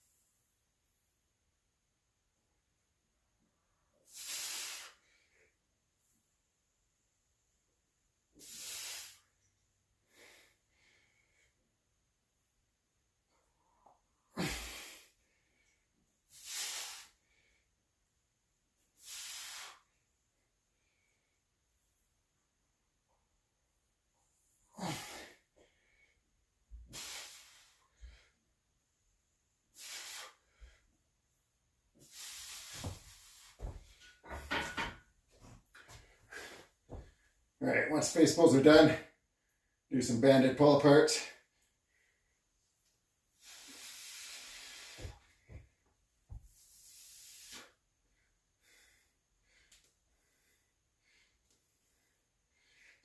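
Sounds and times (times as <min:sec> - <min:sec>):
man breathing out hard: 0:14.3 - 0:15.5, 0:24.7 - 0:26.2.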